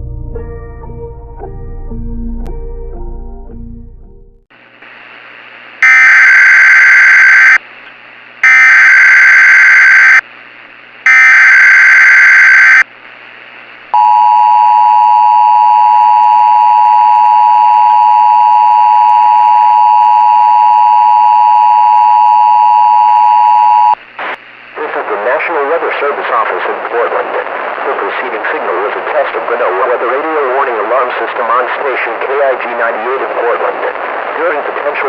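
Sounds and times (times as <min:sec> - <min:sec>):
chirping data tones: 0:08.4 - 0:10.2, 0:11.1 - 0:12.8.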